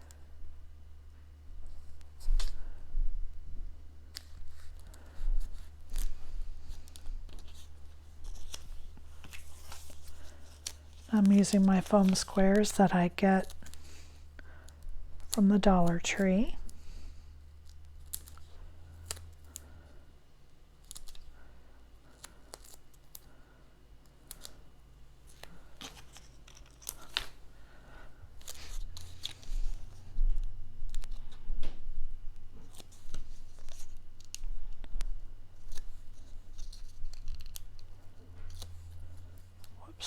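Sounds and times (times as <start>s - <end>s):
cardstock rustling: 4.1s - 14.2s, 25.2s - 27.4s, 28.4s - 31.4s, 32.6s - 34.8s, 35.6s - 39.8s
paper backing peeling: 4.1s - 16.2s, 25.2s - 30.2s, 35.6s - 39.8s.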